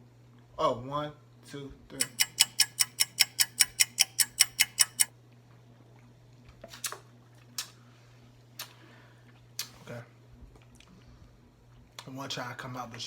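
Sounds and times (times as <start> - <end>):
faint scattered clicks: 2.0 - 5.1
rapid even ticking: 2.0 - 5.1.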